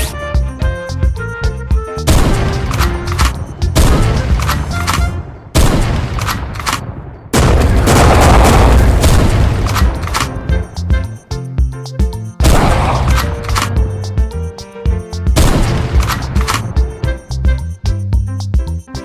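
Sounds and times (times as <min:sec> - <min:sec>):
music: 0:00.0 - 0:06.0, 0:07.4 - 0:19.0
loud bangs and crashes: 0:02.1 - 0:11.1, 0:12.4 - 0:13.9, 0:15.4 - 0:17.1.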